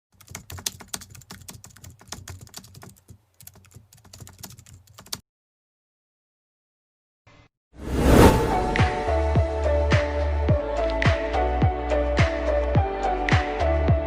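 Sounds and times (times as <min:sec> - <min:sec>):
keyboard typing clicks: 0:00.2 - 0:05.2.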